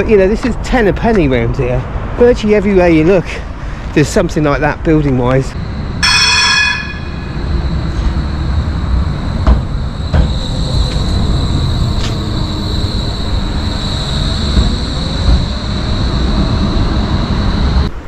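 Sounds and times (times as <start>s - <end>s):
high wheel whine: 5.5s - 18.0s
rail vehicle rumbling past: 5.5s - 18.0s
short ring: 6.0s - 7.4s
knocks: 9.4s - 10.4s, 14.5s - 15.6s.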